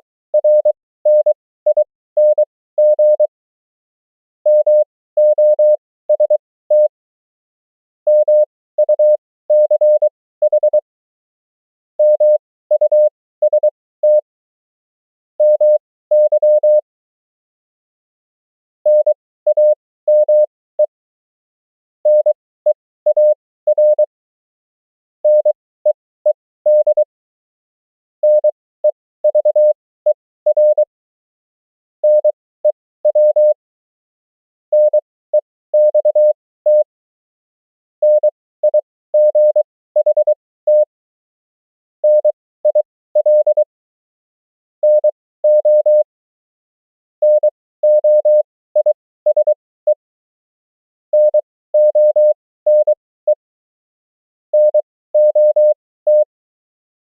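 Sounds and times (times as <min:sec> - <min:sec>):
morse code tone: 0:38.0 - 0:40.9, 0:51.2 - 0:53.4, 0:54.6 - 0:56.3.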